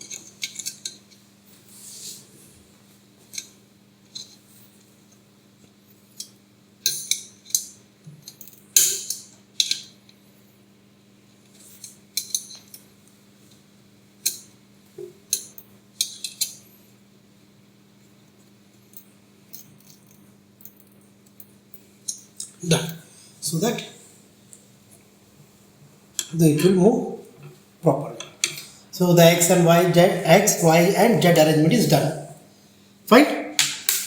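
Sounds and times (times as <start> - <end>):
faint steady hum: 0.0 - 34.0
metal parts and tools clinking: 33.6 - 34.0.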